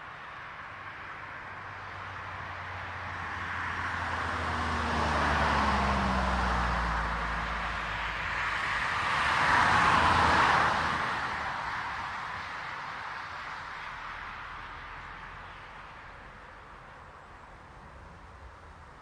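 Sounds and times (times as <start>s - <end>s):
car tyre noise on asphalt: 0.0s - 19.0s
car engine hum passing: 1.9s - 11.8s.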